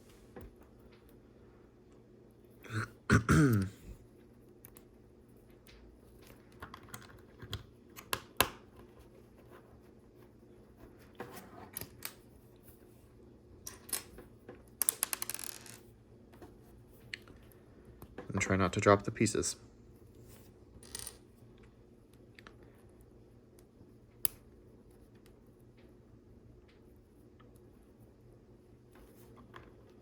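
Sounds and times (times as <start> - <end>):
person clearing throat: 2.6 - 4.0.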